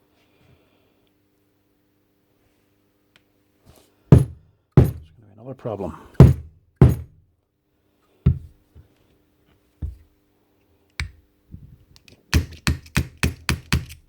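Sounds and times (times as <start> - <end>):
sharp knocks on metal hammer: 4.1 - 5.1, 6.2 - 7.2.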